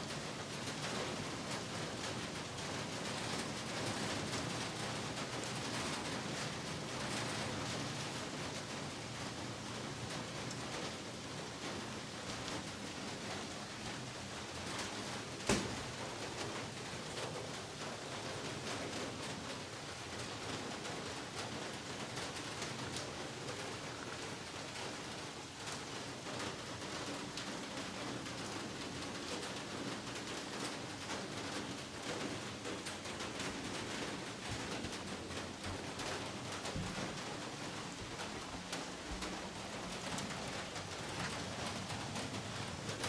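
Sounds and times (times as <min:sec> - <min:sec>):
heavy rain: 0:00.0 - 0:43.0
raindrops tapping on surfaces: 0:00.0 - 0:43.0.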